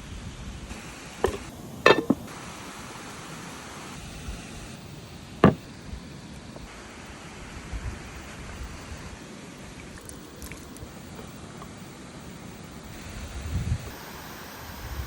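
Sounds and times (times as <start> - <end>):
steady hiss: 0.0 - 15.0
cooking gear knocking and clinking: 1.3 - 2.3.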